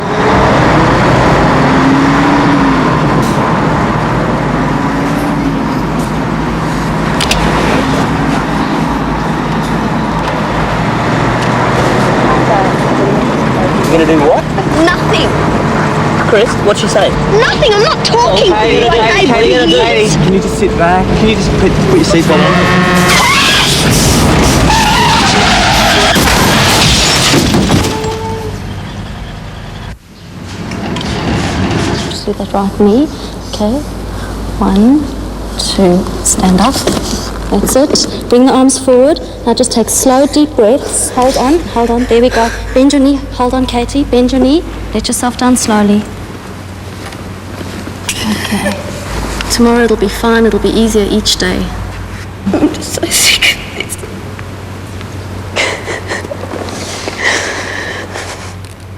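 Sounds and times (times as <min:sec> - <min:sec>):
car engine: 0:00.0 - 0:58.9
road noise: 0:00.0 - 0:58.9
tyres skidding: 0:00.0 - 0:58.9
car crash impact: 0:22.8 - 0:28.6
glass smashing: 0:25.9 - 0:28.2.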